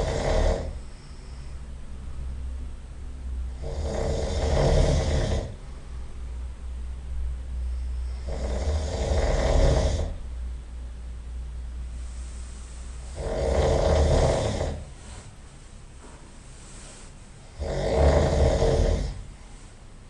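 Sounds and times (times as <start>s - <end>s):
person snoring loudly: 0.0s - 0.8s, 3.5s - 5.6s, 8.0s - 10.2s, 13.0s - 15.0s, 17.4s - 19.3s
quiet breathing: 0.0s - 2.4s, 7.5s - 10.3s, 11.9s - 20.0s.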